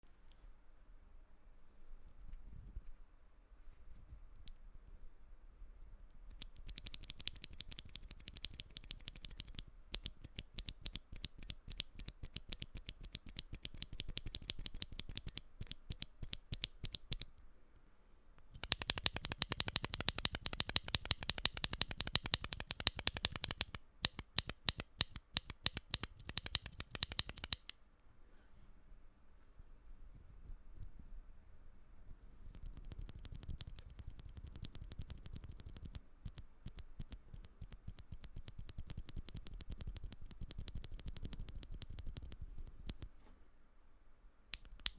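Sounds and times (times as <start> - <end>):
mechanical keyboard typing: 6.3 - 17.3, 18.5 - 27.7, 32.5 - 43.1.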